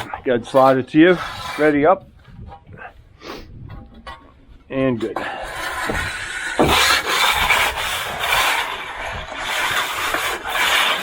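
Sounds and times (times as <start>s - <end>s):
tool scraping concrete: 0.0s - 11.0s.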